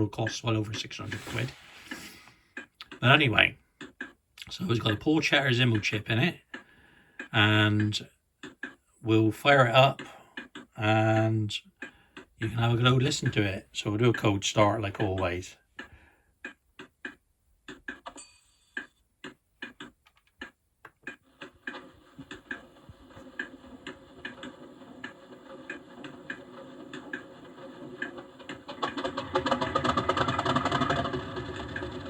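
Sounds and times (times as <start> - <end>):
diesel engine turning over: 28.8 - 32.0.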